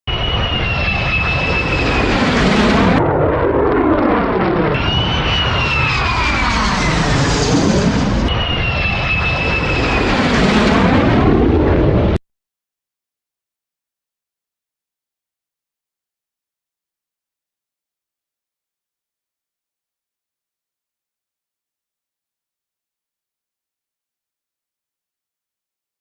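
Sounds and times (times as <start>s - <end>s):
aeroplane flying low overhead: 0.1s - 12.2s.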